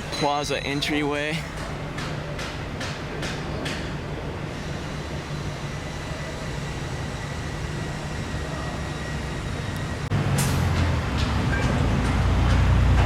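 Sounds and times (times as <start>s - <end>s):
street traffic hum: 0.0s - 13.0s
heavy vehicle rumble: 7.8s - 13.0s.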